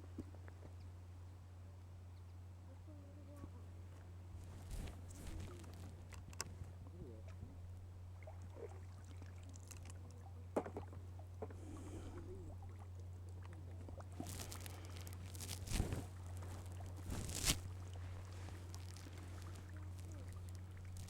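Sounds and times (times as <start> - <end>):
steady low hum: 0.0 - 21.0
water splashing and trickling: 8.1 - 11.5, 12.5 - 21.0.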